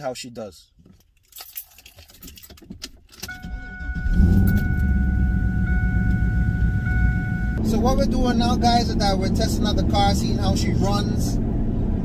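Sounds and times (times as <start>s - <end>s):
keys jingling and clicks: 0.9s - 3.4s
car engine starting and running: 2.4s - 12.0s
steady electronic chime: 3.3s - 7.6s.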